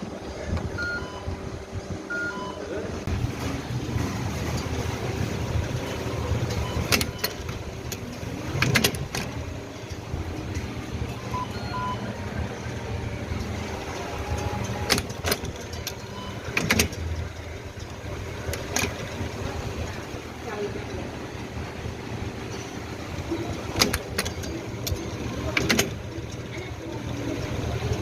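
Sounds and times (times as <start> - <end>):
strapping machine motor hum: 3.0 - 28.0.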